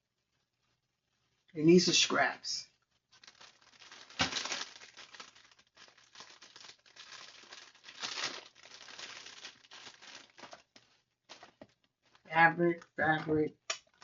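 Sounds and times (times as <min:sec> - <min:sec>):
fabric rustling and crinkling: 0:02.7 - 0:12.3.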